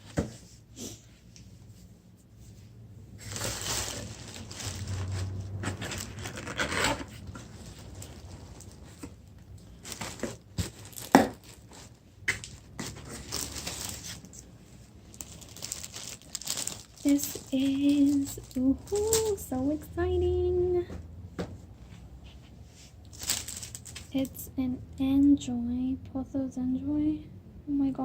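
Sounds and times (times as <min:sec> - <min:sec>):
packaging rustling and tearing: 0:03.2 - 0:19.6, 0:23.0 - 0:24.4.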